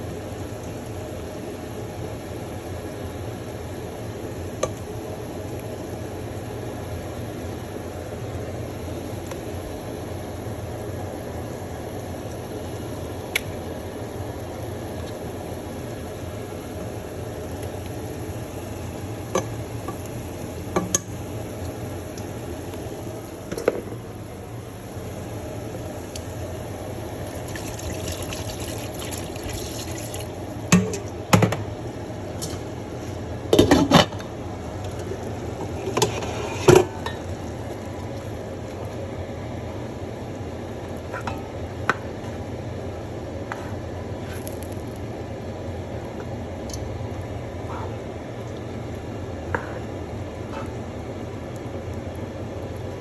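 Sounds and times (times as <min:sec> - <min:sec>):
steady hum: 0:00.0 - 0:53.0.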